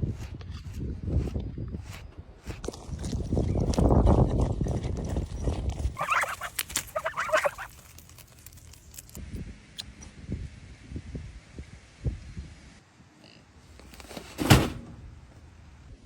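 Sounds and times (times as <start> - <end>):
poultry calling: 6.0 - 7.9.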